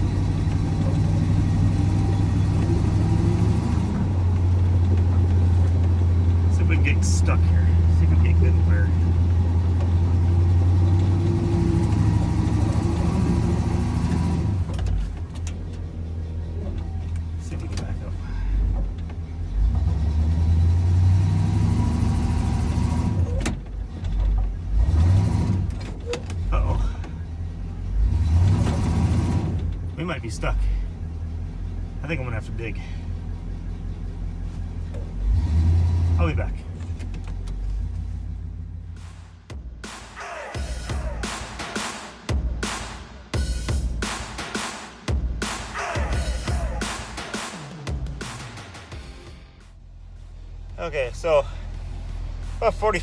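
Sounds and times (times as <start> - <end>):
truck engine under load: 0.0 - 39.6, 49.8 - 53.0
clunk: 14.0 - 18.0, 23.0 - 27.2.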